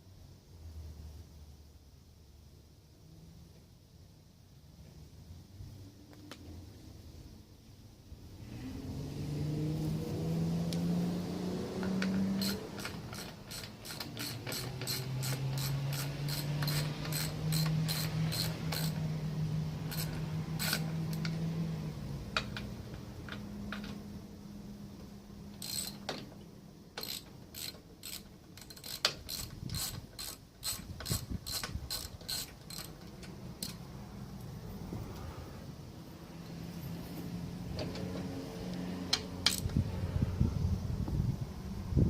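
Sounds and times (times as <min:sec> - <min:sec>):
sharp ratcheting clicks: 0:11.8 - 0:19.2, 0:19.8 - 0:21.4, 0:25.6 - 0:26.3, 0:27.0 - 0:33.8, 0:39.1 - 0:39.8.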